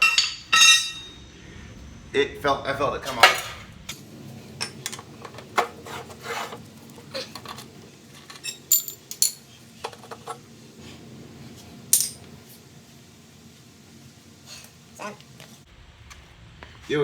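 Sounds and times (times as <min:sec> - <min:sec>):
metal tools clinking and scraping: 0:00.0 - 0:01.2, 0:03.1 - 0:10.4, 0:11.9 - 0:12.3.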